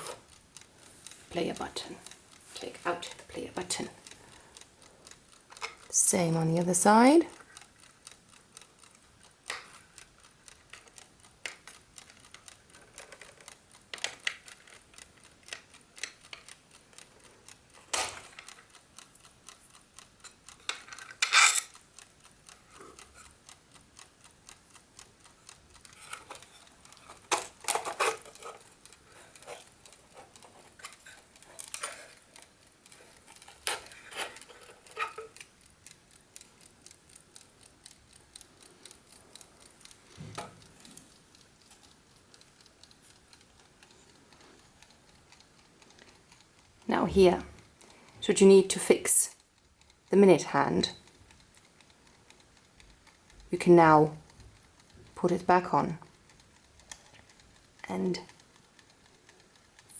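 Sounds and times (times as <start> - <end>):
clock ticking fast: 0.0 - 59.9
clicks and knocks of handled parts: 10.6 - 17.0, 17.8 - 19.2, 20.2 - 21.8, 25.8 - 35.6.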